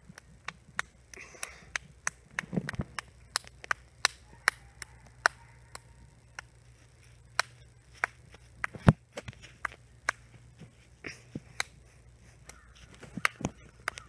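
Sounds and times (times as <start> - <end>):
faint steady hum: 0.0 - 14.0
hard candy clicking against teeth: 0.1 - 6.6, 12.4 - 14.0.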